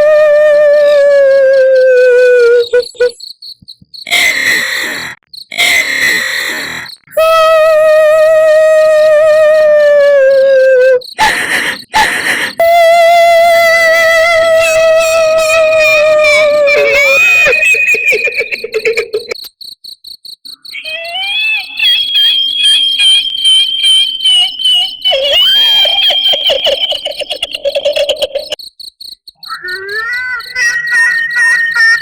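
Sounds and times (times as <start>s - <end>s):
high pulsing chirp: 0.2s - 4.4s, 6.5s - 19.5s, 20.5s - 32.0s
high wavering ghostly wail: 12.6s - 19.3s, 20.7s - 27.6s, 29.5s - 32.0s.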